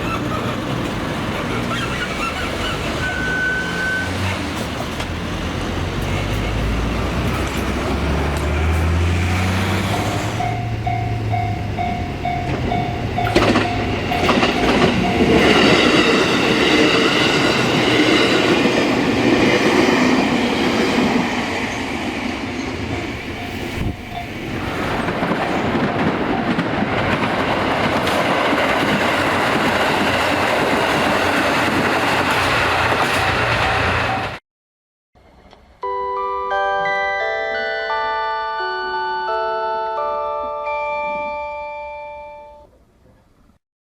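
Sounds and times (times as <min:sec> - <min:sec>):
train wheels clattering on rails: 0:00.0 - 0:34.4
repeated steady tone: 0:09.9 - 0:18.8.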